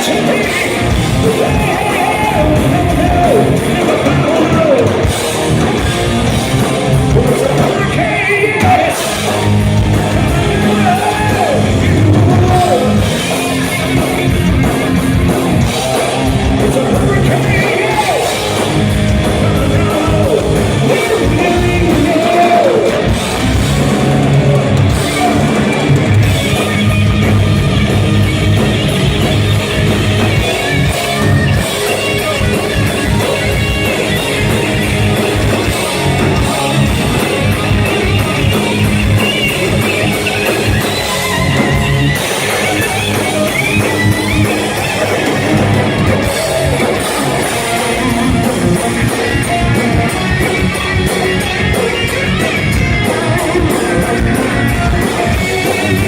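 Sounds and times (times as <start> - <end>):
bass guitar: 0.0 - 56.0
drums: 0.0 - 56.0
electric guitar bending notes: 0.0 - 56.0.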